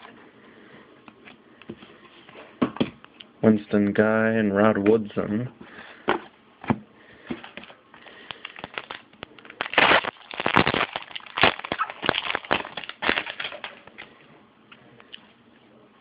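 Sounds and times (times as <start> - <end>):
wrapper crinkling and crackling: 7.4 - 14.1.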